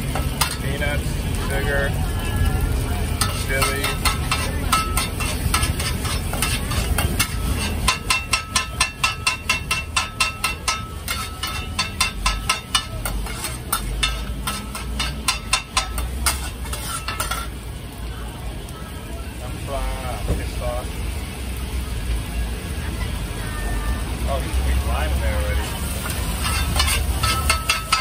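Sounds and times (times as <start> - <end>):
metal spatula clanging on a wok: 0.0 - 0.8, 3.1 - 17.6, 25.8 - 28.0
food sizzling: 0.0 - 28.0.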